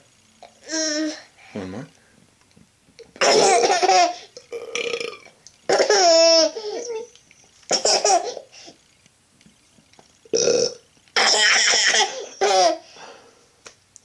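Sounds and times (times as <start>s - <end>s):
toddler burping: 3.2s - 7.1s.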